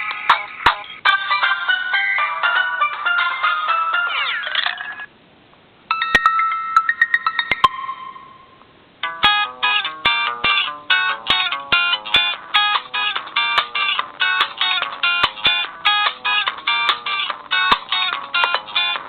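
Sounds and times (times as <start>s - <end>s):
ringtone with sweeping glides: 5.9s - 10.4s.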